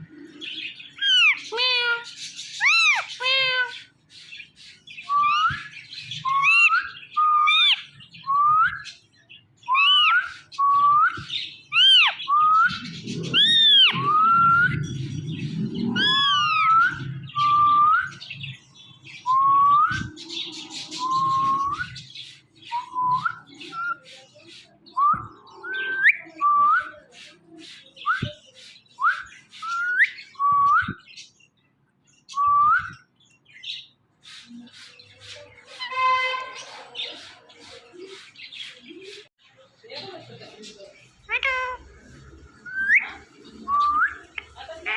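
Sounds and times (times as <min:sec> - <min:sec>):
parrot whistled calls: 0:01.0 - 0:02.0, 0:02.6 - 0:03.7, 0:05.0 - 0:08.9, 0:09.7 - 0:14.8, 0:16.0 - 0:18.2
parrot squawks: 0:01.0 - 0:03.9, 0:11.7 - 0:12.2, 0:13.3 - 0:14.7, 0:16.0 - 0:17.7, 0:41.3 - 0:43.2.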